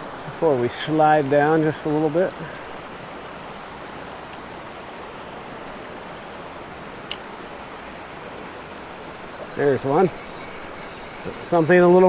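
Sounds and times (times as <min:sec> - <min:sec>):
flowing stream water: 0:00.0 - 0:12.0.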